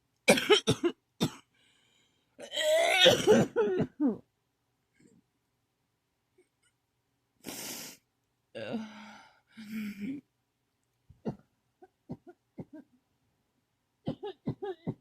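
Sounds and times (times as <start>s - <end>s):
person coughing: 0.3s - 1.4s, 2.5s - 4.2s, 14.1s - 15.0s.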